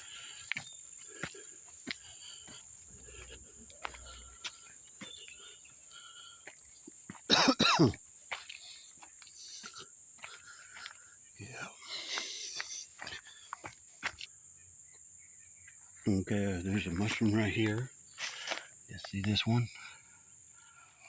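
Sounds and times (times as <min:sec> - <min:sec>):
footsteps crunching over leaves: 0:00.0 - 0:05.5
insects droning: 0:00.0 - 0:21.0
short cough-like sounds: 0:07.3 - 0:08.0.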